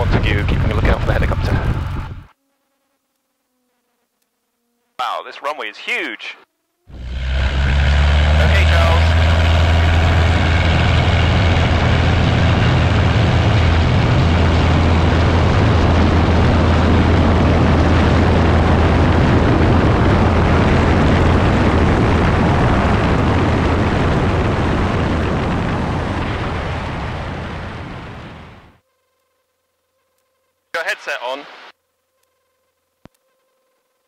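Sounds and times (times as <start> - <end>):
light aircraft engine droning: 6.9 - 28.7.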